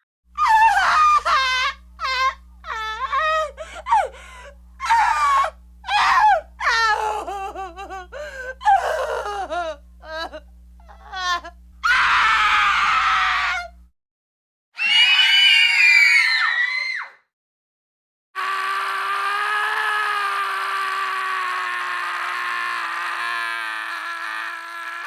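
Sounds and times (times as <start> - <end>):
low electrical hum: 0.3 - 13.9
high-pitched screams and yelps: 0.4 - 4.0, 4.8 - 7.1, 10.9 - 13.7, 14.8 - 17.2, 18.4 - 25.0.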